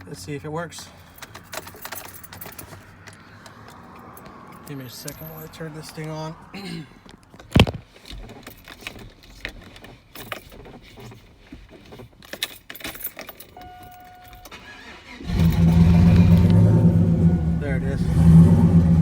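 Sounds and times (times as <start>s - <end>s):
keys clicking and rattling: 0.9s - 6.1s, 7.3s - 14.6s
truck engine starting and running: 14.4s - 19.0s.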